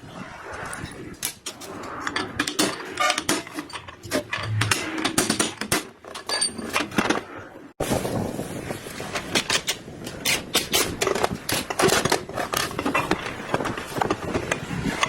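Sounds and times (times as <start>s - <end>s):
metal parts clinking: 1.4s - 7.2s.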